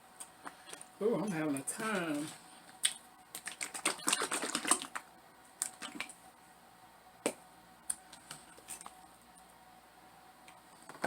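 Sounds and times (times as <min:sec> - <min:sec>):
crunching fried chicken: 0:02.8 - 0:06.2.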